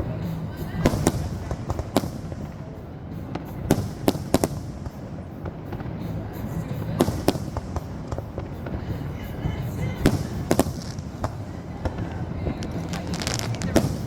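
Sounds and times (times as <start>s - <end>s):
fireworks bangs: 0.0s - 14.0s
fireworks pops and crackles: 0.0s - 14.0s.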